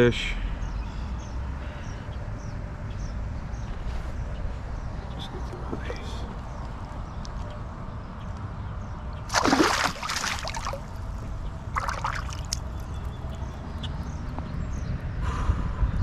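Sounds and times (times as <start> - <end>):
water splashing beside a kayak: 9.3 - 11.0, 11.8 - 12.7.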